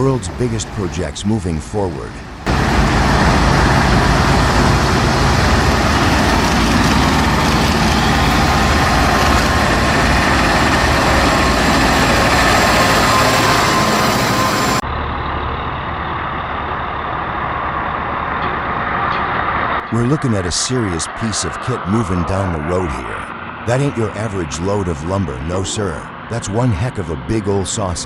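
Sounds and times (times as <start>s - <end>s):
heavy truck engine running: 2.1s - 27.9s
muffled engine running: 2.2s - 20.3s.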